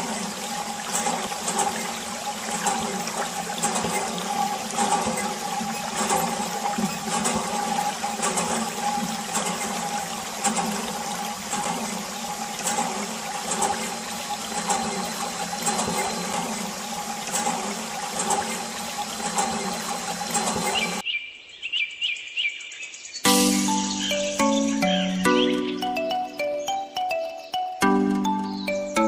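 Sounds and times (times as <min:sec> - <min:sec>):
rushing water: 0:00.0 - 0:21.0.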